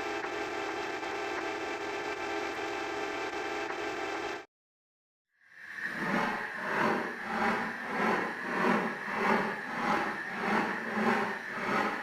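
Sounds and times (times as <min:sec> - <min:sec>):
rhythmic grinding noise: 0:05.7 - 0:12.0.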